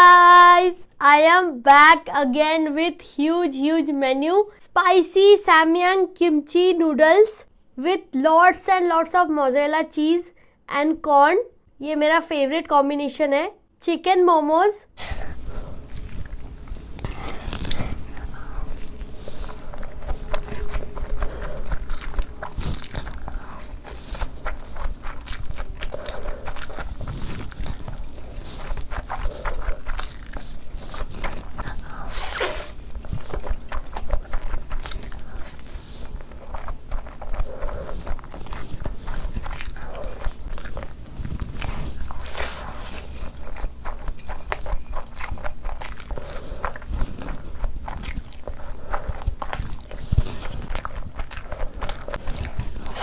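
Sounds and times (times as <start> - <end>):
person chewing and slurping: 15.0 - 53.0.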